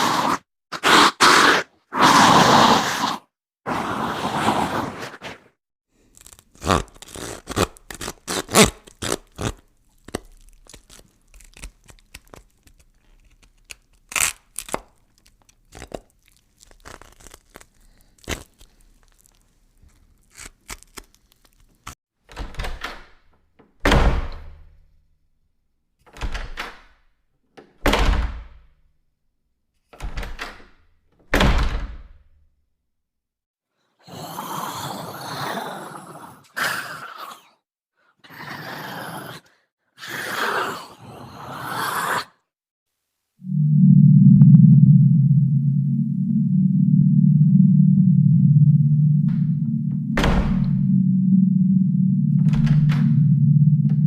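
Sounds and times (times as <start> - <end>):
heavy thuds: 44.7 - 51.8.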